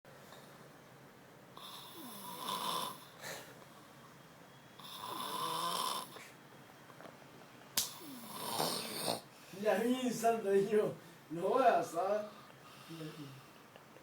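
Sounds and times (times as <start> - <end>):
person snoring: 1.6 - 3.1, 4.8 - 6.2, 8.0 - 9.3.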